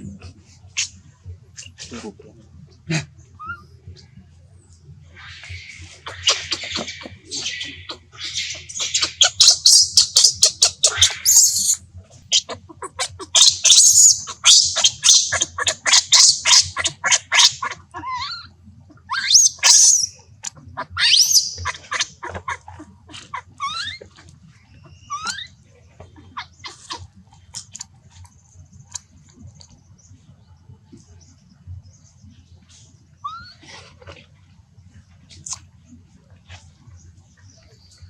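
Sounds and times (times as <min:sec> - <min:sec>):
baby monkey screaming: 0:03.4 - 0:03.7, 0:05.2 - 0:24.2, 0:24.8 - 0:25.6, 0:26.2 - 0:27.8, 0:33.2 - 0:33.6.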